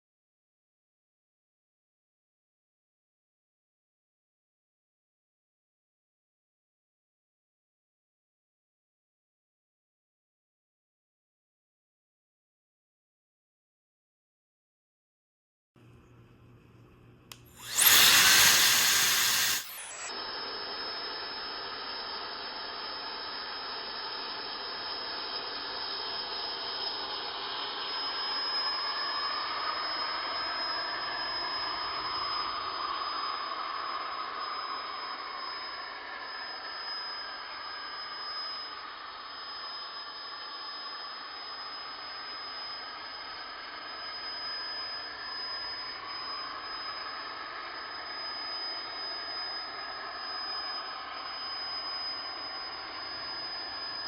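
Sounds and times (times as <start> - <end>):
machine running with hiss and whine: 17.6 - 28.2.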